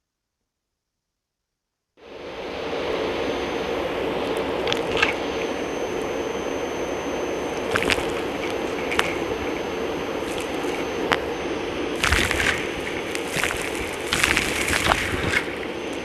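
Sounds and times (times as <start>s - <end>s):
vacuum cleaner motor whirring: 2.1s - 16.0s.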